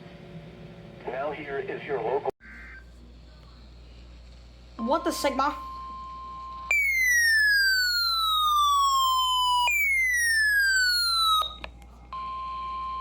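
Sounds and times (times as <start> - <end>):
electronic siren falling wail: 6.7 - 11.6.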